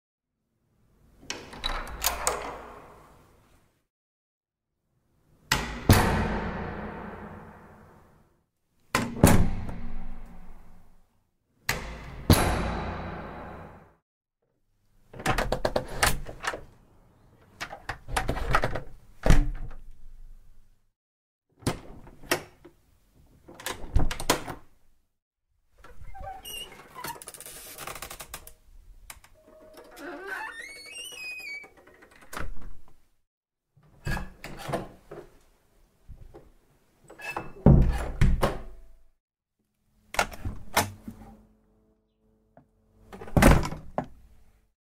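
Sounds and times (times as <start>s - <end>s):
door latch and handle clicks: 1.3s - 2.8s
door hinge creaking: 29.3s - 32.6s.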